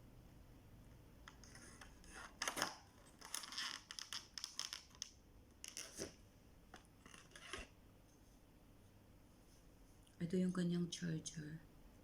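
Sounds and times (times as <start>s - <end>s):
packaging rustling and crinkling: 2.3s - 6.2s.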